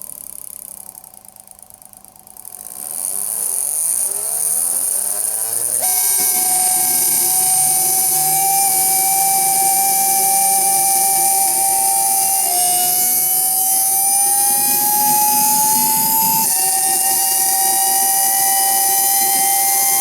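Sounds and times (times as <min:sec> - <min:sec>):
electric motor whining and howling: 0:03.1 - 0:20.0.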